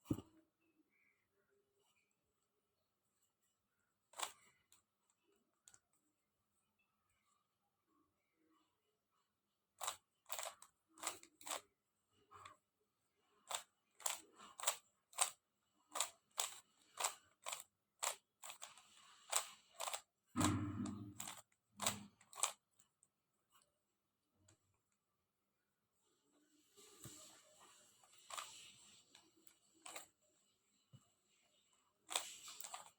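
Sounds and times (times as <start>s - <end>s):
puzzle cube clicking as turned: 4.1s - 4.5s, 9.8s - 11.6s, 13.5s - 22.6s, 28.2s - 29.2s, 29.8s - 30.1s, 32.1s - 32.9s
puzzle cube rattling: 4.2s - 4.4s, 9.8s - 11.6s, 13.5s - 20.1s, 20.9s - 22.6s, 28.1s - 30.1s, 32.1s - 32.9s.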